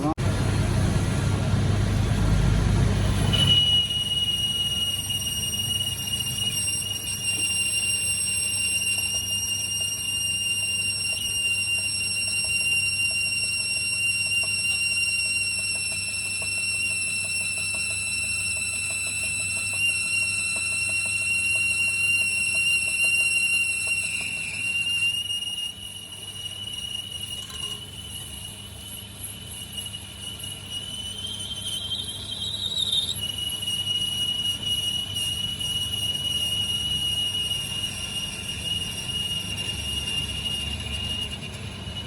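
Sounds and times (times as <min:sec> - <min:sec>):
low machine hum: 0:00.0 - 0:07.1
workshop machine whining: 0:00.0 - 0:42.0.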